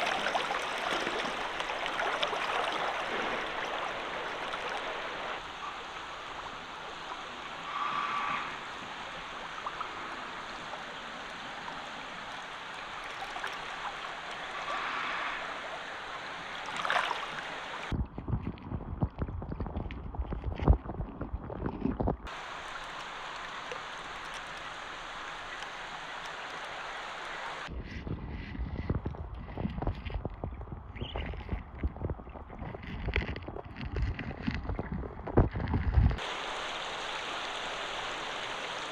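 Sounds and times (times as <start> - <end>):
flowing water rushing: 0.0 - 17.9, 22.2 - 27.7, 36.2 - 38.9.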